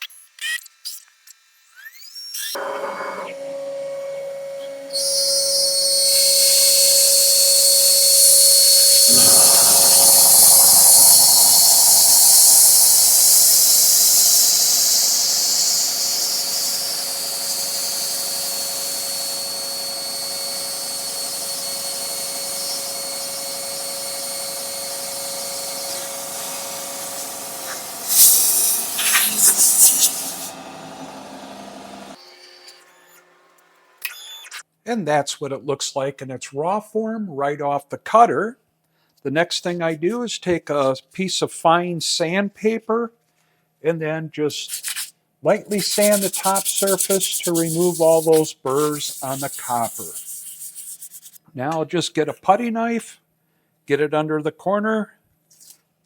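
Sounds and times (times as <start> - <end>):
router spindle whining and milling: 2.6 - 33.3
sharp bursts: 4.9 - 30.6, 44.7 - 51.4.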